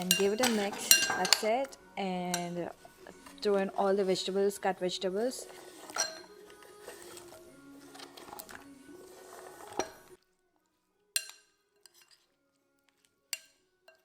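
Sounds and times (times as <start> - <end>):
utensil clinking against pot: 0.0 - 3.4, 5.4 - 10.1, 11.2 - 12.1
background music: 0.0 - 14.0.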